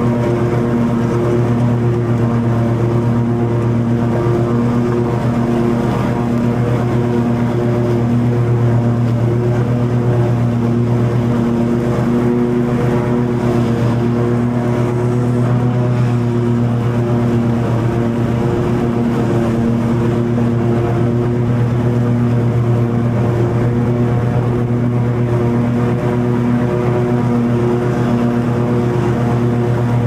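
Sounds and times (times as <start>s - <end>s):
lawn mower cutting grass: 0.0s - 30.0s.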